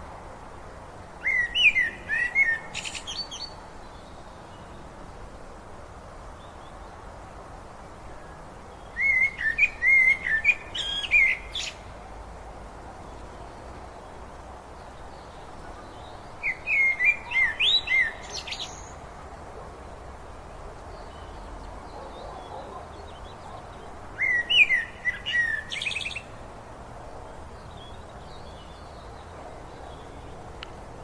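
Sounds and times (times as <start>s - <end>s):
songbird chirping and warbling: 1.2s - 4.8s, 8.2s - 11.9s, 14.8s - 19.0s, 20.9s - 26.4s.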